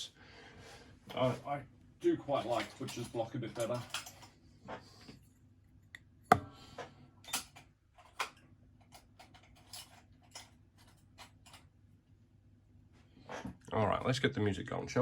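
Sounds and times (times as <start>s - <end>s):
sharp knock: 6.3s - 6.5s.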